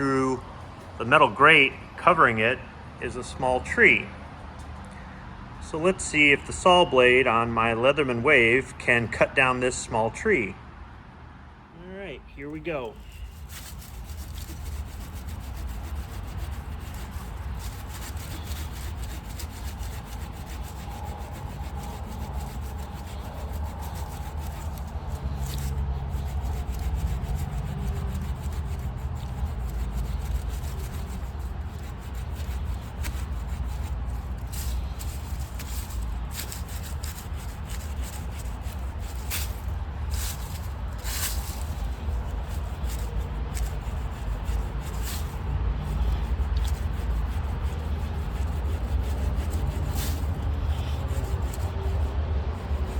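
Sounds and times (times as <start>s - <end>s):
saw blade sawing wood: 12.4s - 52.9s.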